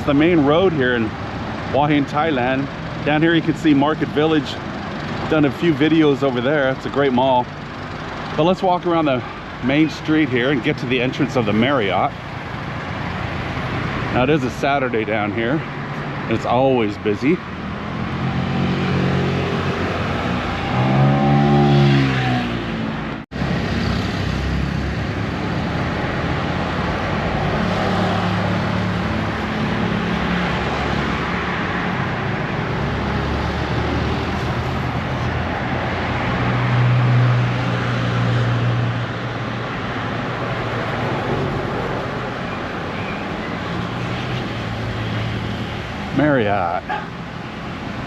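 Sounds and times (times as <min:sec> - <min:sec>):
road traffic passing: 0:00.0 - 0:48.0
engine passing by: 0:17.6 - 0:39.1.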